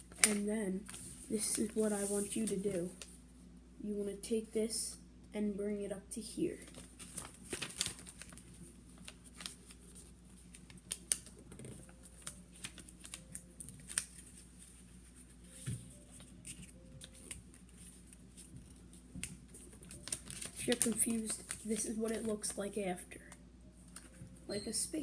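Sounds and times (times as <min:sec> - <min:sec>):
paper being folded: 0:00.0 - 0:03.1, 0:06.6 - 0:23.0
faint steady hum: 0:00.0 - 0:25.0.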